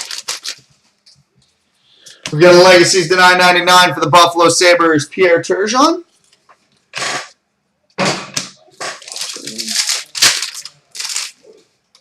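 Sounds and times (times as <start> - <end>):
cards and plastic packaging handled: 0.0 - 1.1, 8.8 - 12.0.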